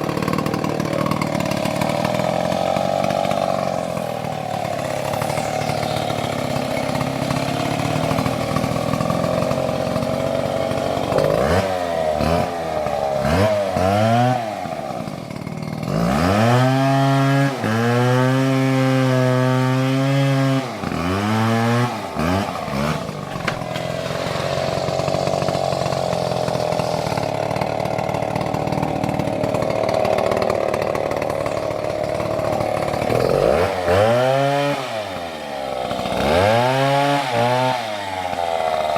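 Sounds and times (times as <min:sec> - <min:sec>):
chainsaw cutting and revving: 0:00.0 - 0:38.9.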